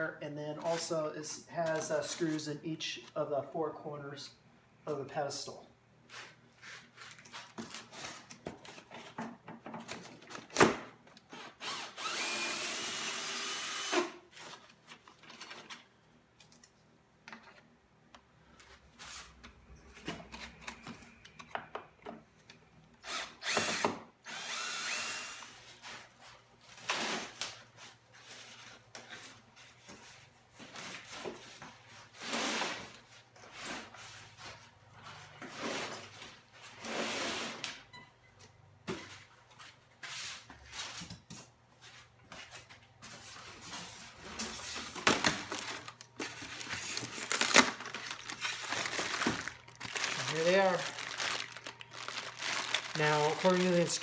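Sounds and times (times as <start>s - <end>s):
power drill: 11.4s - 14.2s, 23.0s - 25.6s.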